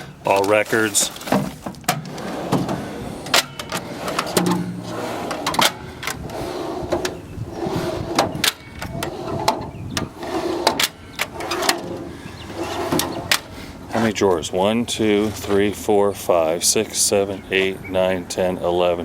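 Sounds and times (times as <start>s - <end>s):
sharp handling clicks and knocks: 0.3s - 7.2s, 8.2s - 12.1s, 12.9s - 13.5s.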